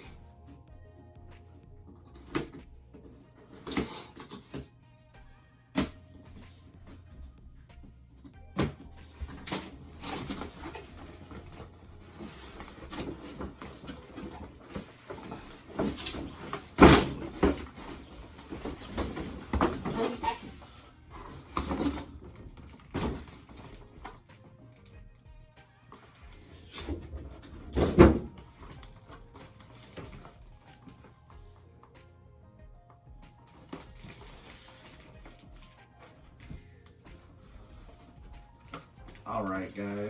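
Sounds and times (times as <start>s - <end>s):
cardboard box rustling and scraping: 8.6s - 24.2s.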